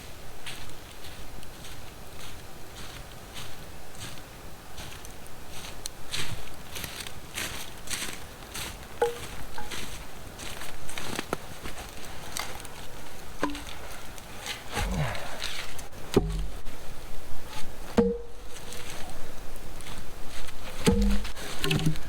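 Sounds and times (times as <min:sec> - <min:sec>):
wooden knocks and clatter: 0:16.1 - 0:16.6, 0:17.9 - 0:18.4, 0:20.8 - 0:22.0.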